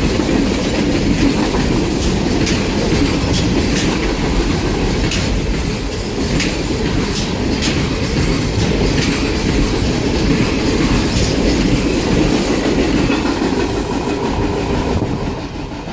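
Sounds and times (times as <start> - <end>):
train wheels rumbling on rails: 0.0 - 15.9
wheels clacking over rail joints: 0.0 - 15.9.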